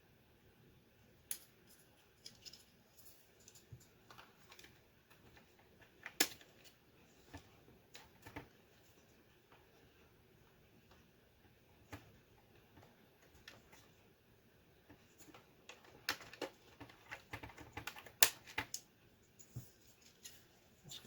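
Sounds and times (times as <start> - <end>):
plastic keyboard parts clicking: 3.4 - 8.5, 14.8 - 18.9.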